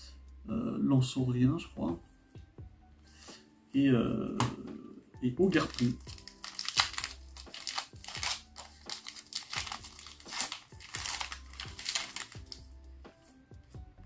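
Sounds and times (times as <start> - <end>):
foil wrapper crinkling and tearing: 5.5 - 12.6.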